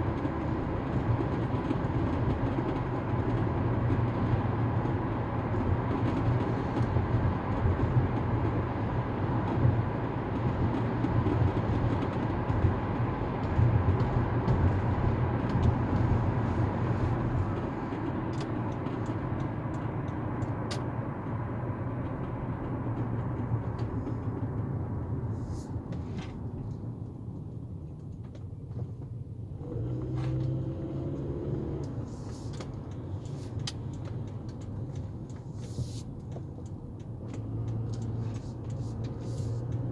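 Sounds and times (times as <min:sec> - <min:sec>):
heavy vehicle rumble: 0:00.0 - 0:39.9.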